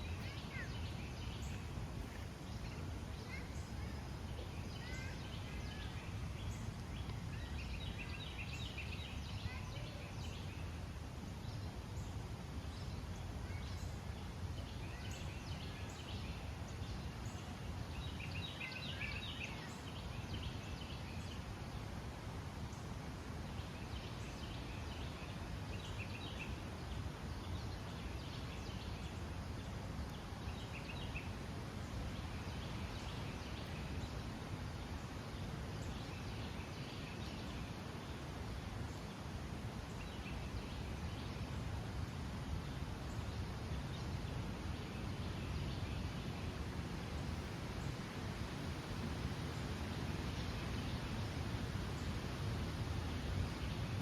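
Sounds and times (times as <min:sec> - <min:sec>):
small birds chirping: 0:00.0 - 0:21.5.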